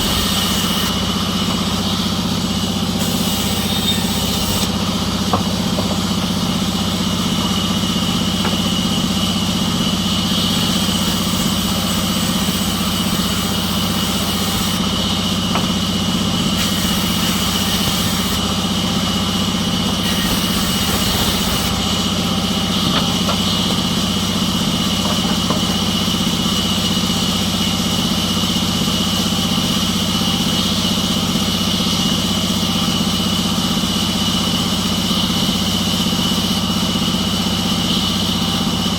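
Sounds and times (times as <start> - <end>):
engine running steadily: 0.0 - 38.9.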